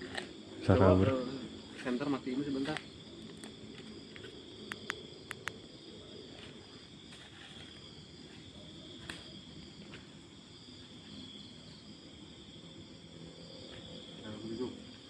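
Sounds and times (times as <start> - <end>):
crickets chirring: 0.0 - 15.0.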